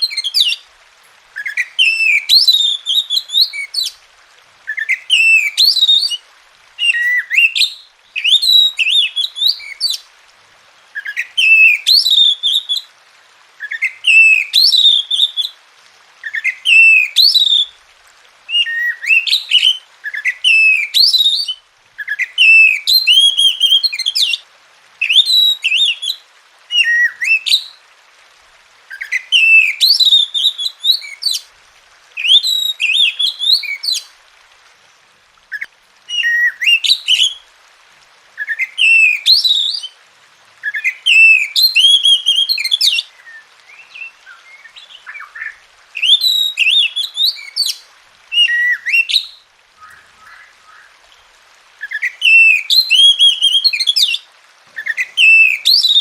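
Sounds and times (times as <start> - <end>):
bird singing whistled song: 0.0 - 0.6, 1.4 - 4.0, 4.7 - 6.2, 6.8 - 10.0, 11.0 - 12.9, 13.6 - 15.6, 16.2 - 17.8, 18.5 - 24.4, 25.0 - 27.8, 28.9 - 31.4, 32.2 - 34.1, 35.5 - 37.4, 38.4 - 40.0, 40.6 - 50.9, 51.8 - 54.2, 54.8 - 56.0.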